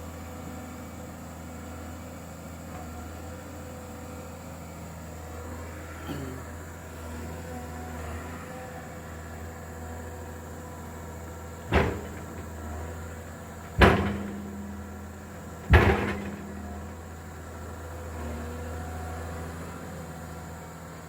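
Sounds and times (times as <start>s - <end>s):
heavy machine engine running: 0.0s - 21.0s
heavy thuds: 11.7s - 17.3s.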